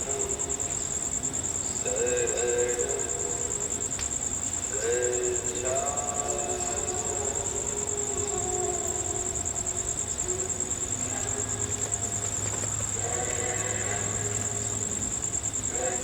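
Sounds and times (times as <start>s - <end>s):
crickets chirring: 0.0s - 16.0s.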